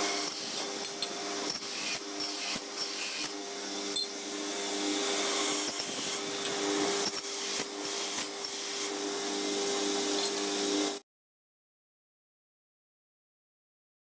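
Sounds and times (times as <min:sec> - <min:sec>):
power tool humming: 0:00.0 - 0:11.0.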